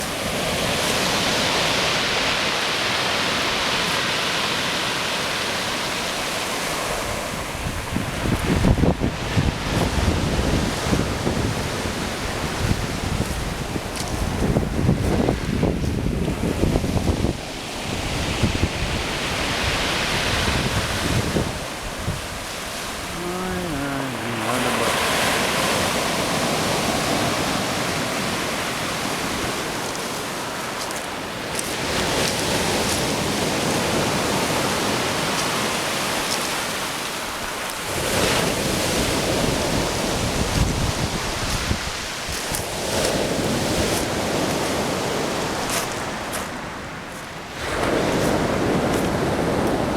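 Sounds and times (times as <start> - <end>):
waves breaking: 0.0 - 49.9
wind buffeting microphone: 7.1 - 23.2, 38.1 - 45.8.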